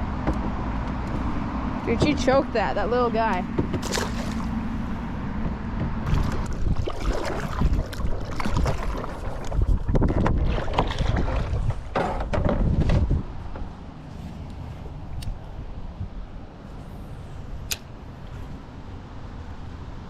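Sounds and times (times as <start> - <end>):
wind rumble on microphone: 0.0 - 20.0
water sounds: 1.9 - 5.1, 6.0 - 12.2.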